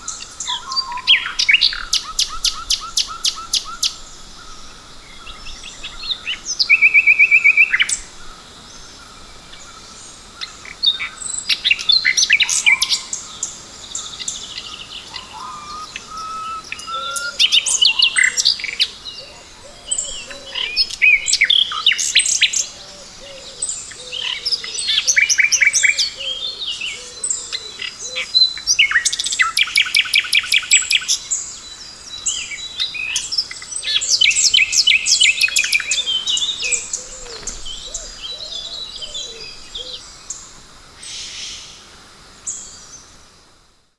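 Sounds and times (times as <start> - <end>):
wild birds chirping and singing: 0.0 - 43.3.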